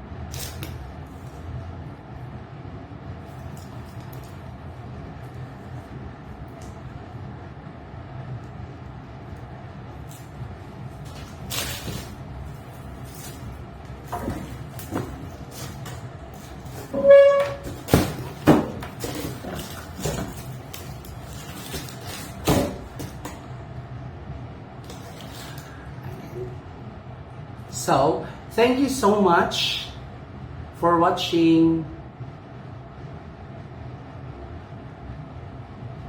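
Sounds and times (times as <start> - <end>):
steady low hum: 0.0 - 36.0
short squeak: 16.9 - 17.8.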